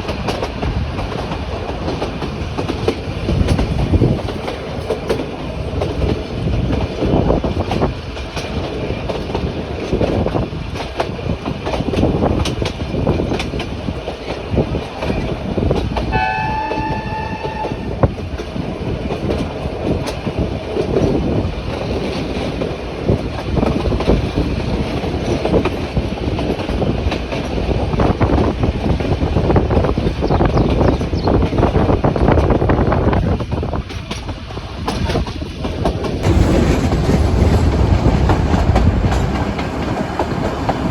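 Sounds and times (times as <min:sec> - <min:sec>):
train wheels rumbling and rattling: 0:00.0 - 0:40.9
train horn: 0:16.1 - 0:18.2.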